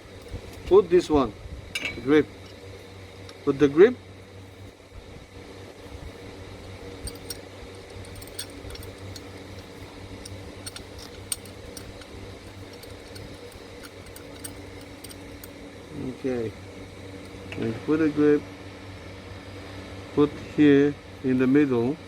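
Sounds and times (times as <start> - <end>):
low steady hum: 0.0 - 22.0
metal clamp clicking and tapping: 7.0 - 15.6.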